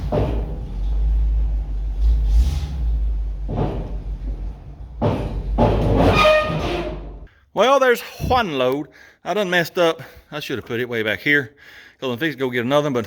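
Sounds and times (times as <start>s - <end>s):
dump truck engine rumbling: 0.0s - 7.3s
high squeal: 6.0s - 7.2s.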